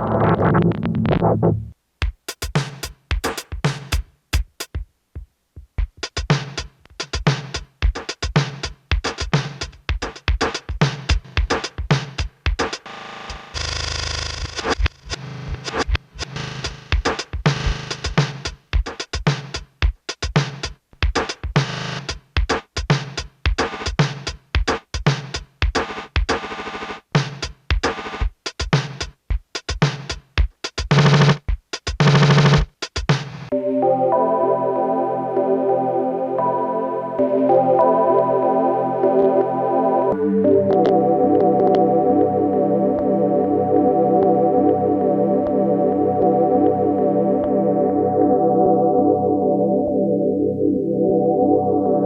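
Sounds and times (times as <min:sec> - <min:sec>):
stuttering sampled drum loop: 0:02.0 - 0:33.6.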